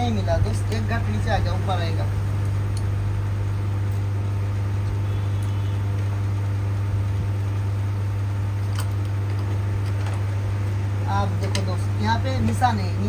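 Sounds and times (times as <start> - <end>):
electric fans humming: 0.0 - 13.0.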